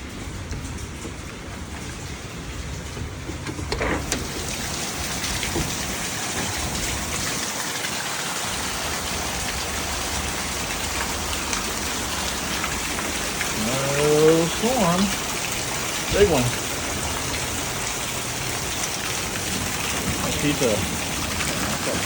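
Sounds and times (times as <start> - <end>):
heavy rain splattering: 0.0 - 22.0.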